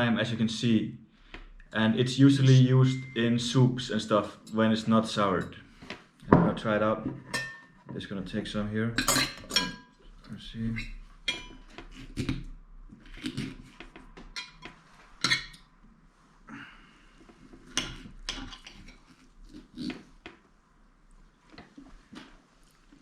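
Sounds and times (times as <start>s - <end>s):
cutlery and dishes clinking: 7.3s - 7.8s, 9.0s - 9.9s, 11.3s - 12.5s, 14.3s - 15.6s.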